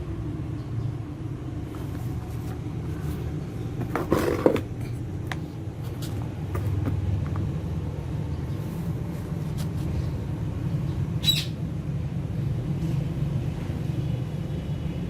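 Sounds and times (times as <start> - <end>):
parrot squawk: 11.2 - 11.6.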